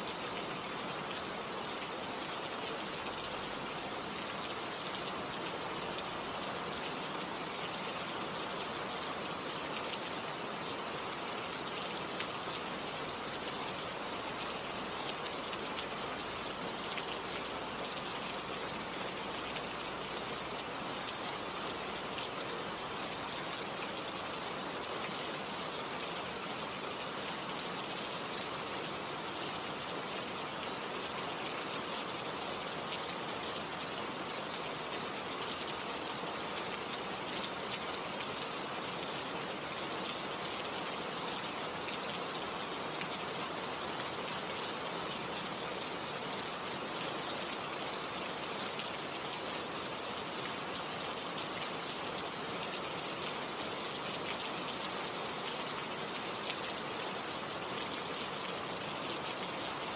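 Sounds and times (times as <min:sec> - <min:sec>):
steady rainfall: 0:00.0 - 0:59.9.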